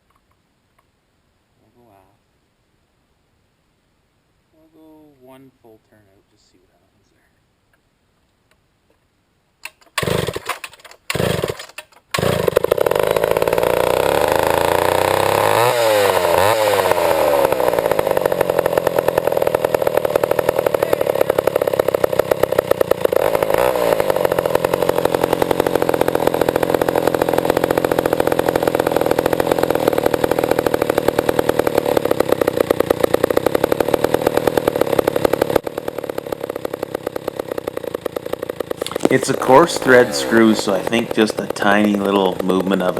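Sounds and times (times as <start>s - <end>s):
two-stroke chainsaw revving: 9.9s - 42.9s.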